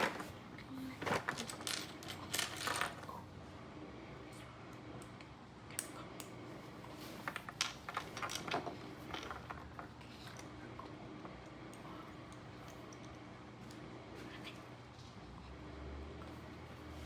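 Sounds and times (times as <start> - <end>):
plastic pieces clicking and rattling: 1.0 - 3.1, 7.3 - 10.5.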